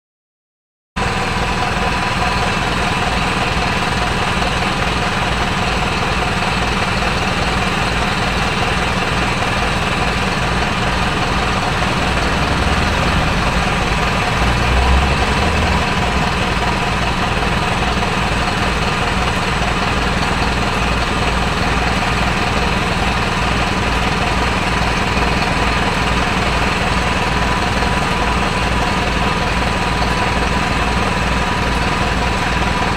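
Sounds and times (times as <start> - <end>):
machine engine pulsing: 9.0 - 32.9.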